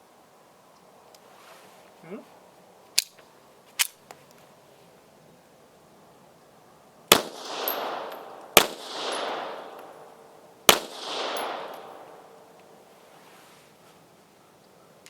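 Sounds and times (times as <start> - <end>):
pistol shots with rolling echo: 7.0 - 12.9.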